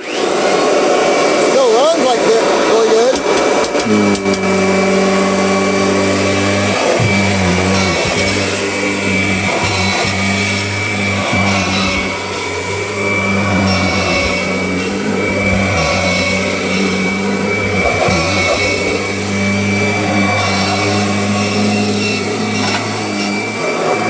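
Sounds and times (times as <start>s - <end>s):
upright vacuum cleaner running: 0.0s - 24.0s.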